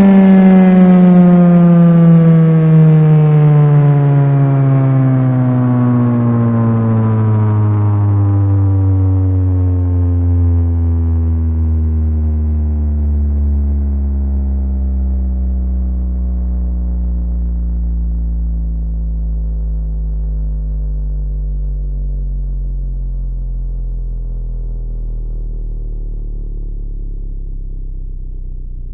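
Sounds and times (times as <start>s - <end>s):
warning siren winding down: 0.0s - 20.4s.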